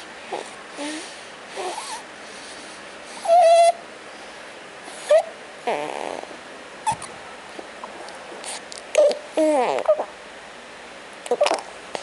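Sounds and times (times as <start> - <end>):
breathy hiss: 0.0 - 6.3
snoring with whistling squeaks: 1.6 - 2.0, 3.2 - 3.8, 4.9 - 6.4.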